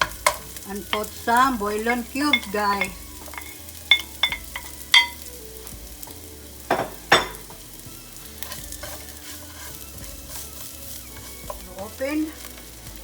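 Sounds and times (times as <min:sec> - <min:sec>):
utensil knocking against pan: 0:00.0 - 0:01.2, 0:02.3 - 0:05.2, 0:06.7 - 0:07.6
food sizzling in oil: 0:00.0 - 0:13.0.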